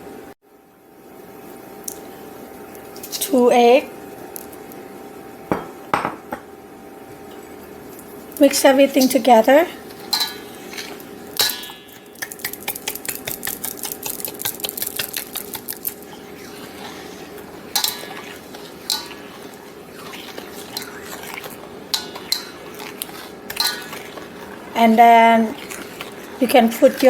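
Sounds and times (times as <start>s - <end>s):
utensil scraping a mixing bowl: 8.0s - 27.0s
utensil clinking bowl rim: 9.8s - 27.0s.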